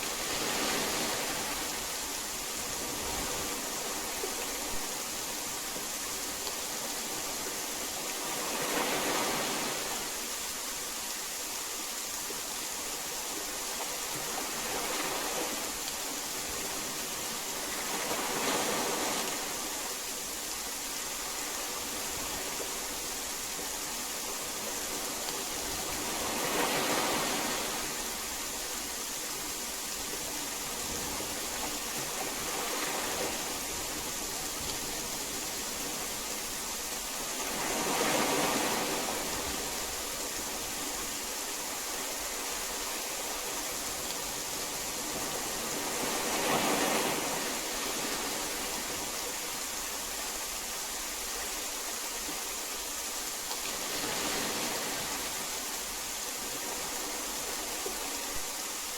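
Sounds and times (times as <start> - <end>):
heavy rain hissing: 0.0 - 58.9.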